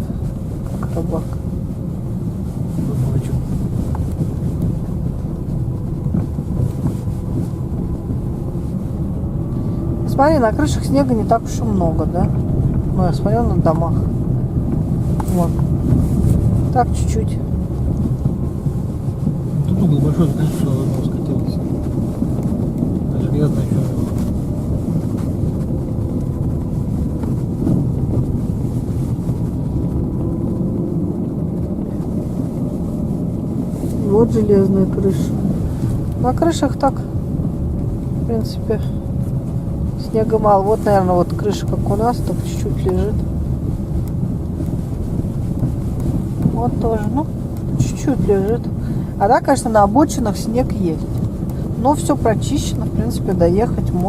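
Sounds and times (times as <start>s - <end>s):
car engine rumble: 0.0s - 54.0s
tyres on snowy road: 0.0s - 54.0s.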